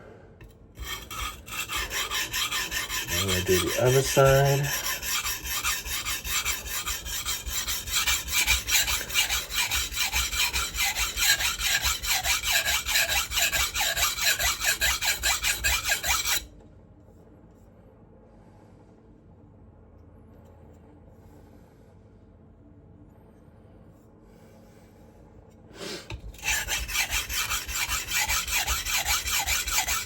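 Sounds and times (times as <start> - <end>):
knife scraping on whetstone: 0.8 - 16.4, 25.8 - 30.0.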